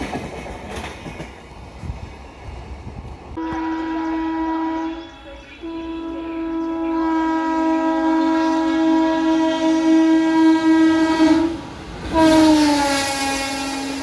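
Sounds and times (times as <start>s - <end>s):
passing train noise: 0.0s - 14.0s
locomotive horn blast: 3.4s - 14.0s.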